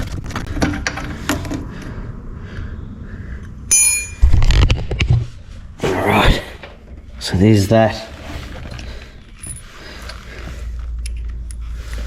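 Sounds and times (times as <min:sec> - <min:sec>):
metal tool striking and ringing: 0:03.7 - 0:04.2.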